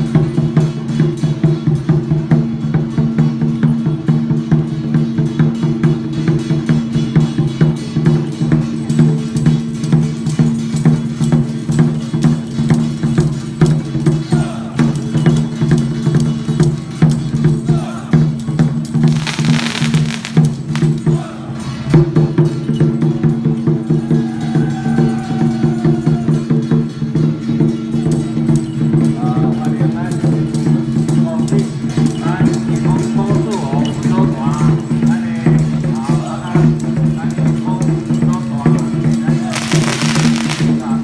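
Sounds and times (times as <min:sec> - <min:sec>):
drums: 0:00.0 - 0:41.0
wood-block beats clacking: 0:19.0 - 0:21.1, 0:39.4 - 0:41.0.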